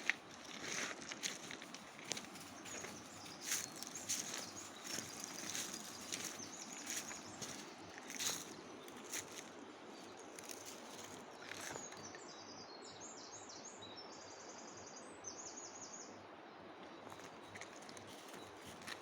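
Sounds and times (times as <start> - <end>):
flowing river water: 0.0 - 12.1.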